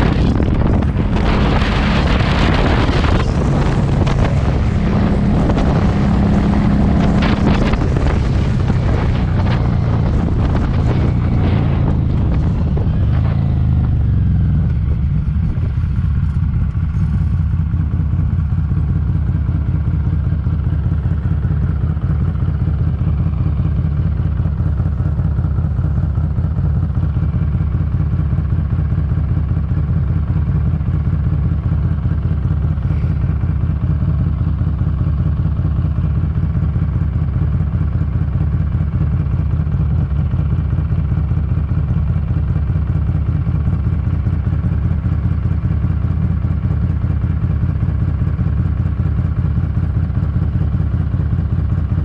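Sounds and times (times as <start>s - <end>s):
wind noise on microphone: 0.0s - 18.5s
motorcycle engine running: 0.0s - 52.0s.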